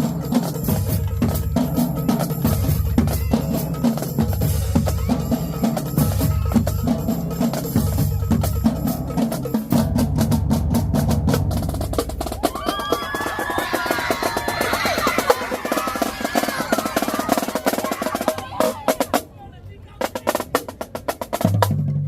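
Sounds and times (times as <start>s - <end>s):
bass drums pounding: 0.0s - 12.7s
snare drums: 0.0s - 19.3s, 20.0s - 22.0s
tenor drums: 0.0s - 22.0s.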